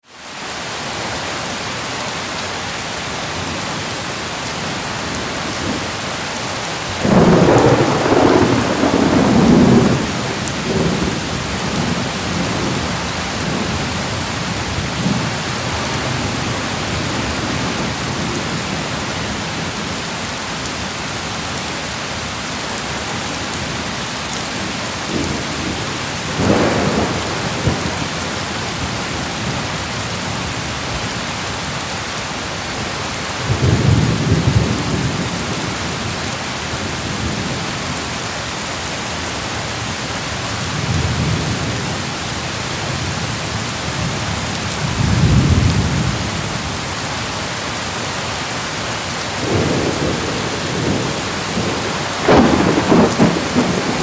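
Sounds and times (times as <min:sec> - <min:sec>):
steady rain: 0:00.0 - 0:54.0
thunder rumbling: 0:06.9 - 0:18.9, 0:24.6 - 0:30.1, 0:49.4 - 0:54.0.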